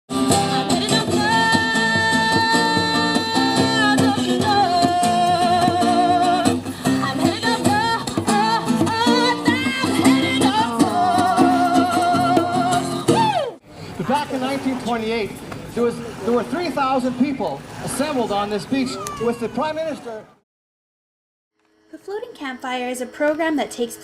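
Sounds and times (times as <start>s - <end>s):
guitar accompaniment: 0.1s - 13.6s
person singing long notes: 0.1s - 13.6s.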